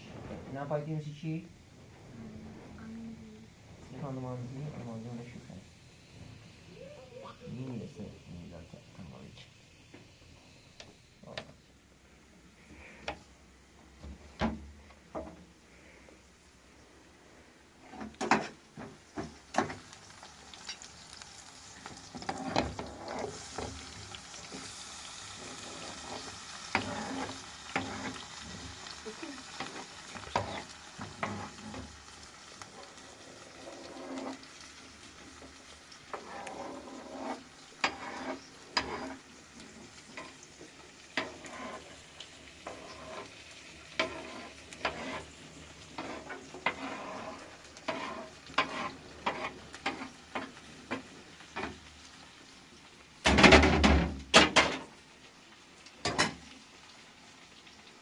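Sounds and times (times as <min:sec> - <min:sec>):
food sizzling in a pot: 0:00.0 - 0:58.0
spoon scraping a pot: 0:22.1 - 0:23.4, 0:25.4 - 0:28.6, 0:29.6 - 0:31.9, 0:33.6 - 0:34.4, 0:36.1 - 0:39.2, 0:41.2 - 0:42.0, 0:42.6 - 0:43.4, 0:44.0 - 0:50.6.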